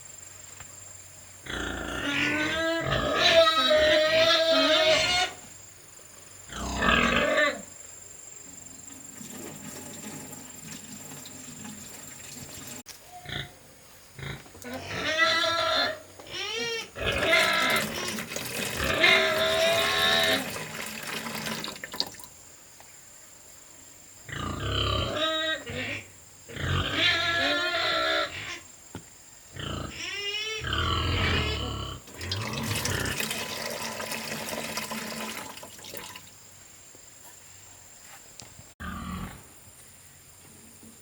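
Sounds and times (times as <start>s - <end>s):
sliding animal calls: 16.4s - 21.6s.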